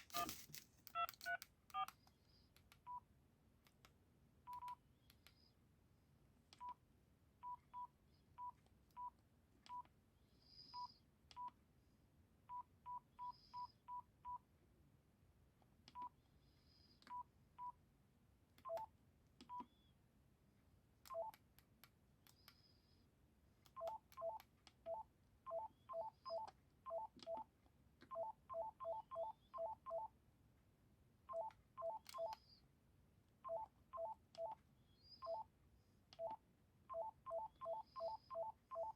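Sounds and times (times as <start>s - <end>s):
keypad beeps: 0.9s - 2.0s, 4.5s - 4.8s, 18.7s - 18.9s, 21.1s - 21.4s, 23.8s - 27.5s, 28.1s - 30.1s, 31.3s - 32.4s, 33.5s - 34.6s, 35.2s - 35.4s, 36.2s - 38.9s.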